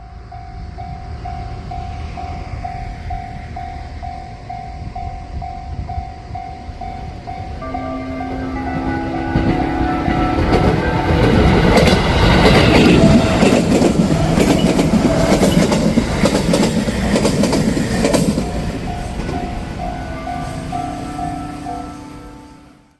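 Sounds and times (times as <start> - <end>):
two-tone level crossing bell: 3.6 - 13.5, 18.8 - 22.9
train wheels clattering over rail joints: 10.4 - 19.8.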